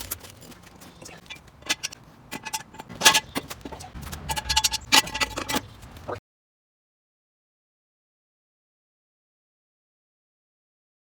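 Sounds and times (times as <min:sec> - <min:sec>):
metal objects clinking and rattling: 0:00.0 - 0:06.2.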